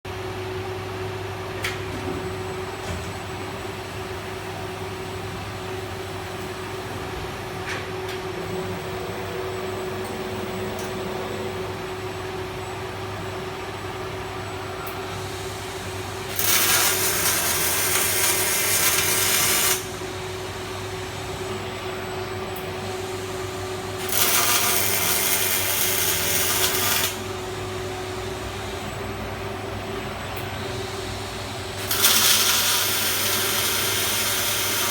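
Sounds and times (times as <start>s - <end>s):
machine hum: 0.1s - 34.9s
welding arc hiss: 15.0s - 21.6s, 22.7s - 28.9s, 30.6s - 34.9s.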